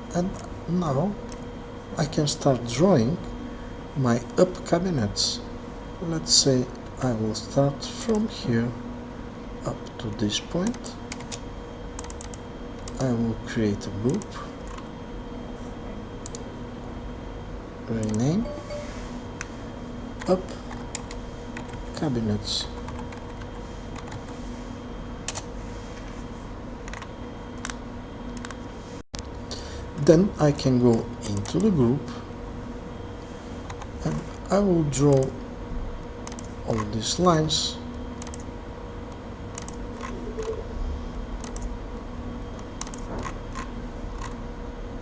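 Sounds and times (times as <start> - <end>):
faint electrical hum: 0.0 - 45.0
keyboard and mouse clicks: 12.0 - 13.0, 26.9 - 27.8, 28.4 - 28.6, 36.3 - 36.9, 38.2 - 38.5, 39.5 - 40.6, 41.4 - 41.7, 42.6 - 44.4.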